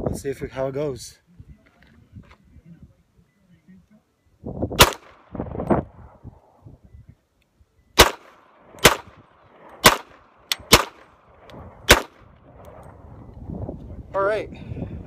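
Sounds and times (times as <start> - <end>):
pistol shots: 4.8 - 5.3, 8.0 - 11.2, 11.8 - 12.3.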